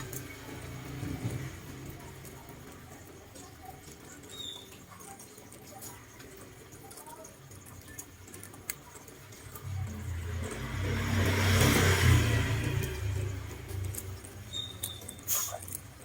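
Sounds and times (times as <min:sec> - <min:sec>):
motor vehicle passing: 0:09.3 - 0:16.0.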